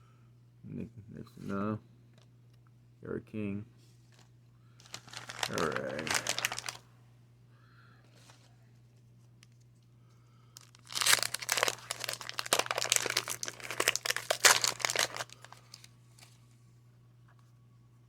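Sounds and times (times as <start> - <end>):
paper wrapper tearing and crinkling: 4.8 - 6.8, 10.6 - 15.9.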